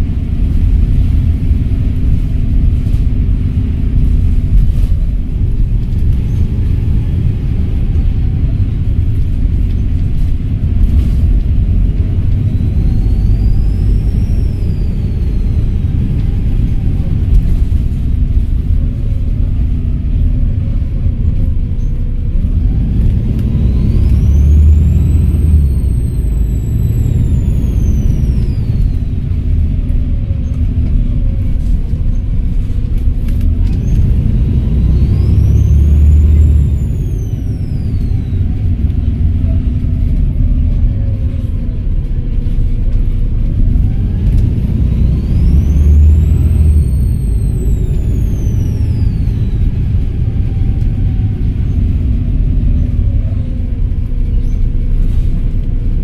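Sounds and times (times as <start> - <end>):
bus engine rumbling: 0.0 - 56.0
turbocharger whistling: 10.9 - 17.9, 21.7 - 32.3, 33.6 - 41.4, 43.6 - 55.3.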